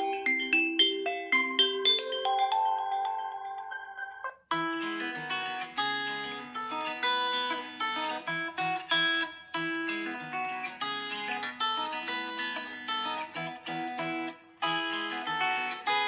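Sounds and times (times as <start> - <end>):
mallet-like ringtone: 0.0 - 4.9
plucked acoustic guitar ringtone: 0.0 - 16.0.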